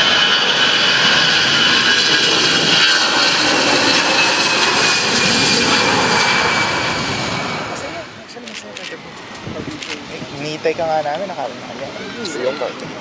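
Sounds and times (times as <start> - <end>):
jet engines running: 0.0 - 13.0.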